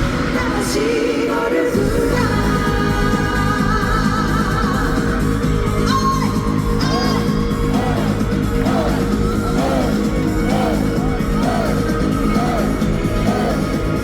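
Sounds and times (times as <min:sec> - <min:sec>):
live pop-rock band: 0:00.0 - 0:14.0
audience shouting and whooping: 0:06.8 - 0:14.0.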